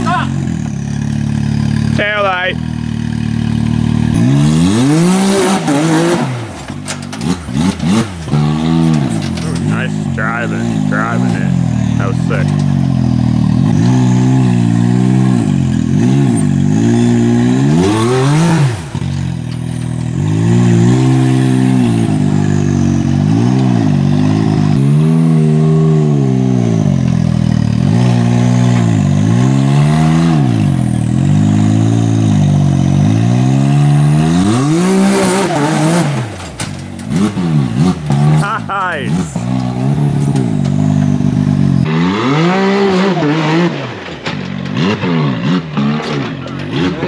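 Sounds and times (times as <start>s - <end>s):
utv engine revving: 0.0s - 47.0s
noisy clattering: 6.5s - 14.0s, 35.8s - 41.2s, 43.8s - 47.0s.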